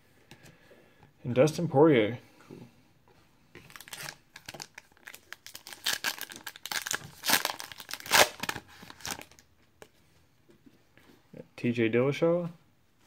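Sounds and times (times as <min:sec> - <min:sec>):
wrapper crinkling and tearing: 0:03.7 - 0:09.4.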